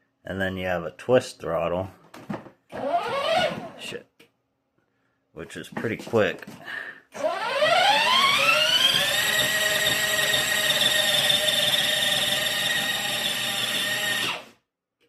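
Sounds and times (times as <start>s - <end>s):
electric motor whining: 2.8s - 3.8s, 7.2s - 14.5s.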